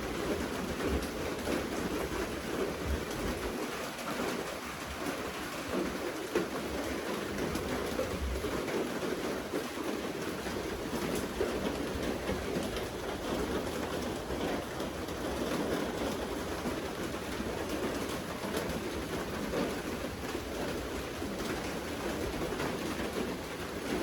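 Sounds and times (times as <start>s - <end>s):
steady rain patter: 0.0s - 24.0s.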